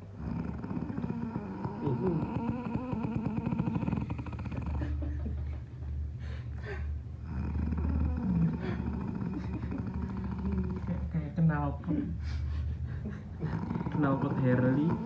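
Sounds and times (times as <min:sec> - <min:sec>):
heavy snoring with rattle: 0:00.0 - 0:05.0, 0:06.7 - 0:11.2, 0:13.4 - 0:15.0.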